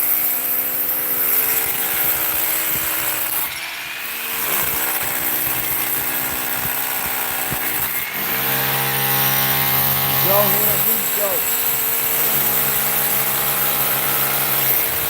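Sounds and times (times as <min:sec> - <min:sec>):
power tool motor running: 0:00.1 - 0:15.0.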